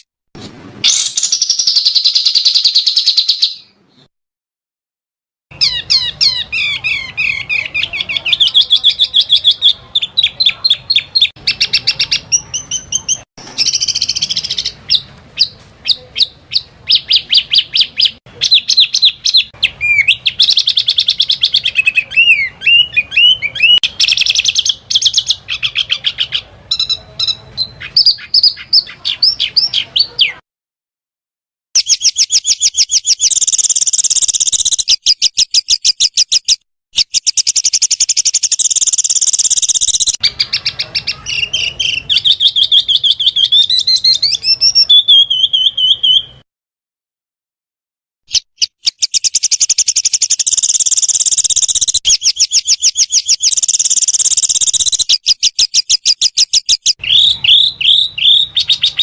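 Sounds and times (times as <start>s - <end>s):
songbirds trilling: 5.5s - 30.4s, 31.8s - 46.4s, 48.6s - 59.0s.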